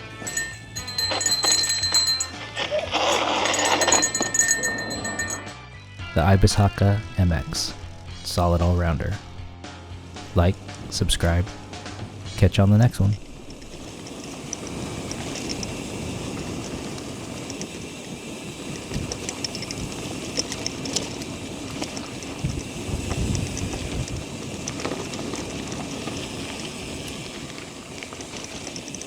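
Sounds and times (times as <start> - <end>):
bicycle tyre rumble: 0.0 - 5.6, 6.4 - 29.0
small rattles and clicks: 0.0 - 5.6, 13.2 - 29.0.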